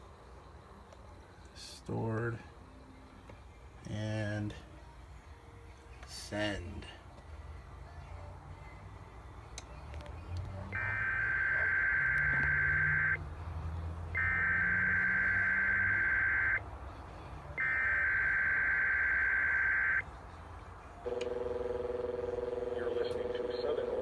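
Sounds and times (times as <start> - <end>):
warbling digital data tones: 10.8 - 13.2, 14.2 - 16.6, 17.6 - 20.0.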